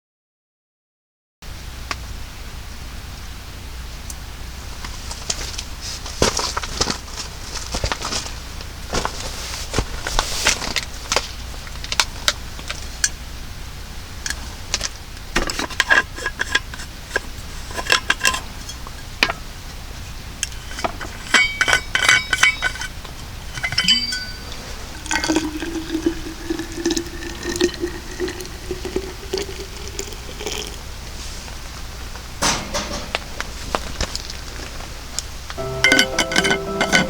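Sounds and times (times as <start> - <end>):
glassware and dishes clinking: 20.4 - 30.8, 35.6 - 37.0
liquid pouring into container: 23.6 - 31.2.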